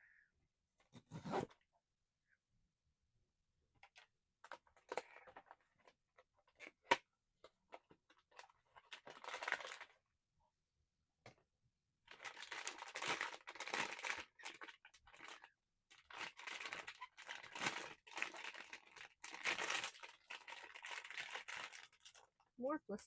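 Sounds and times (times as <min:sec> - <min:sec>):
plastic packaging crinkling and tearing: 0:08.1 - 0:10.0, 0:12.1 - 0:22.4.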